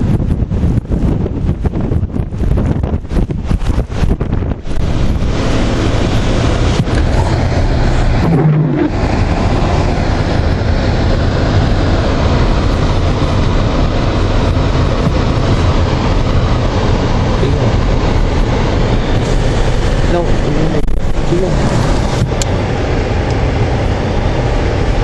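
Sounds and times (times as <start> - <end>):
car driving on snowy road: 0.0 - 25.0.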